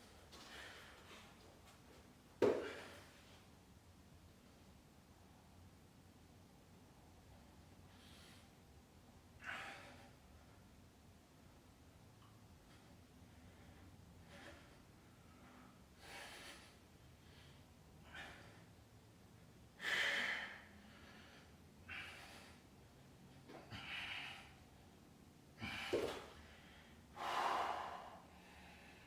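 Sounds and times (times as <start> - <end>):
person breathing hard: 25.6 - 29.0.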